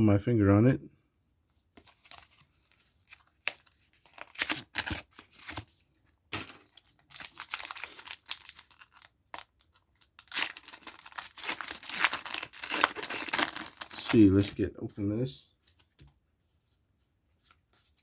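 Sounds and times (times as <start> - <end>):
foil wrapper crinkling and tearing: 3.1 - 5.6, 6.3 - 14.6.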